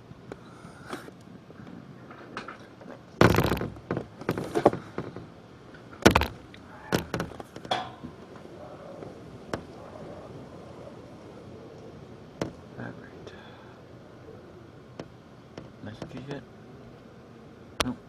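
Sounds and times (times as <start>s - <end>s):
knocks and thumps: 3.2s - 5.3s, 6.0s - 8.2s, 12.4s - 12.6s, 15.0s - 16.4s.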